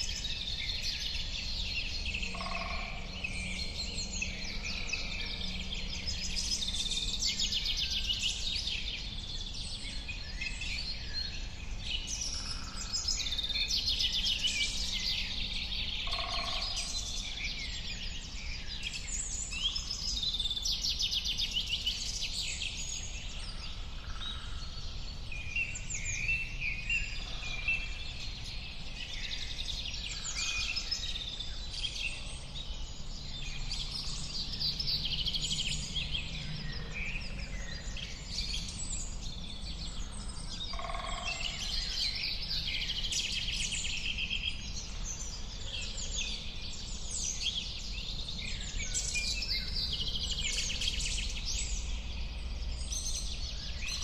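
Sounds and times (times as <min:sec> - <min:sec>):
birds chirping and singing: 0:00.0 - 0:54.0.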